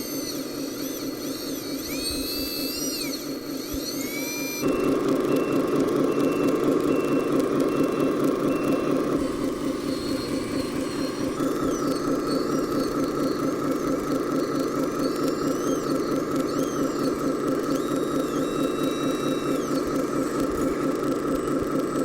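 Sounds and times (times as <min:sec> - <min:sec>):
high electric motor whines: 0:00.0 - 0:22.0
simulated diesel engine throb: 0:04.6 - 0:22.0.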